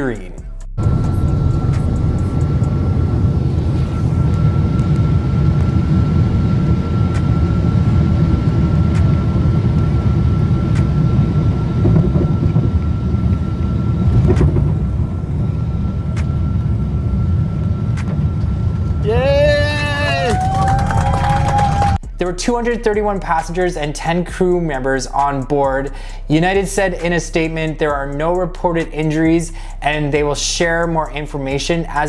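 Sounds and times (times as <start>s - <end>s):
thin high whine: 0.0s - 31.9s
aircraft rolling on runway: 0.8s - 22.0s.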